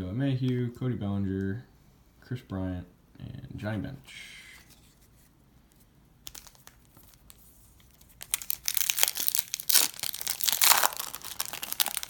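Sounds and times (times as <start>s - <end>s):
wrapper crinkling and tearing: 6.2s - 12.0s.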